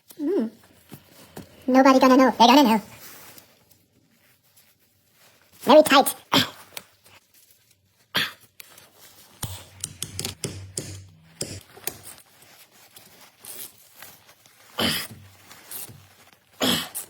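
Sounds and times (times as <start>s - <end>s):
tools clicking and knocking: 9.4s - 12.1s.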